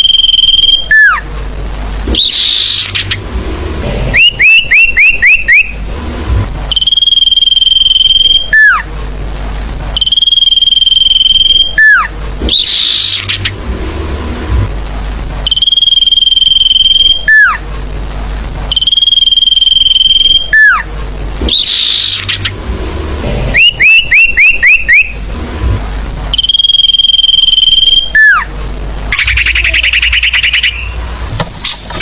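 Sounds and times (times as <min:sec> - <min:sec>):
buzzy bird trill: 0:00.0 - 0:01.2, 0:02.1 - 0:03.3, 0:04.1 - 0:05.9, 0:06.7 - 0:08.8, 0:10.0 - 0:13.6, 0:15.4 - 0:17.6, 0:18.7 - 0:22.6, 0:23.4 - 0:25.2, 0:26.3 - 0:28.5, 0:29.1 - 0:31.2
high bird whistle: 0:00.0 - 0:01.2, 0:02.1 - 0:03.2, 0:04.1 - 0:05.8, 0:06.7 - 0:08.8, 0:10.0 - 0:13.5, 0:15.4 - 0:17.6, 0:18.7 - 0:20.8, 0:21.5 - 0:22.5, 0:23.5 - 0:25.2, 0:26.4 - 0:28.5, 0:29.1 - 0:31.0
low steady hum: 0:00.0 - 0:32.0
short rising chirps: 0:02.1 - 0:06.0, 0:06.7 - 0:08.8, 0:15.4 - 0:17.6, 0:21.5 - 0:25.3, 0:26.3 - 0:28.4.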